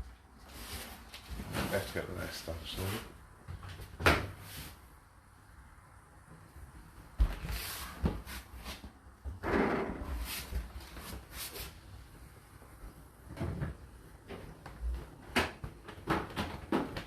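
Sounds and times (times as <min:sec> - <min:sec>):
rustling scrape: 0:00.4 - 0:03.0, 0:07.4 - 0:08.9, 0:10.1 - 0:11.8.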